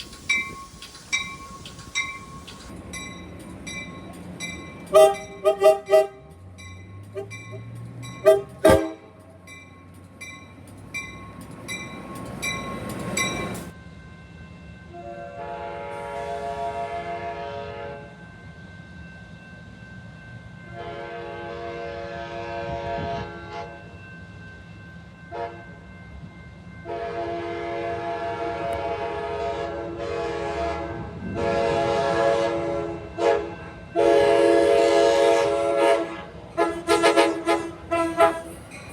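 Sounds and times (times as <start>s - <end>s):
train air horn blasts: 4.9s - 6.3s, 7.1s - 7.6s, 8.2s - 9.2s, 15.0s - 18.2s, 20.7s - 23.9s, 25.3s - 25.7s, 26.8s - 38.7s.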